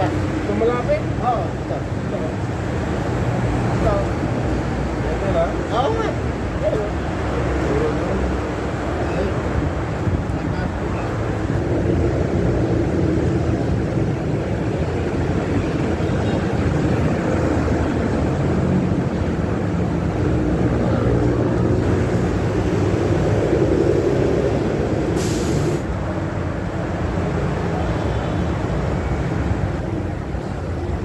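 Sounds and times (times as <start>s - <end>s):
short hiss: 25.2s - 25.8s.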